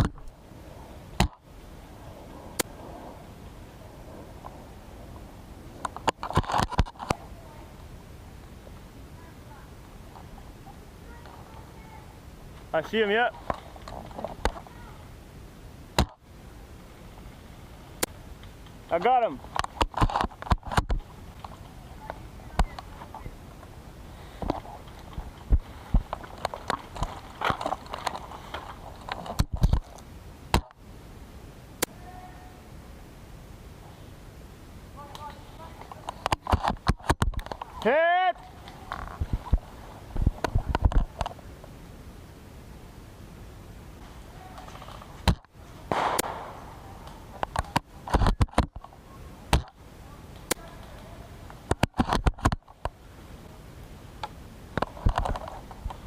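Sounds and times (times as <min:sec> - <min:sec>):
gear and rifle handling clicks: 0:05.8 - 0:07.2, 0:24.4 - 0:30.0.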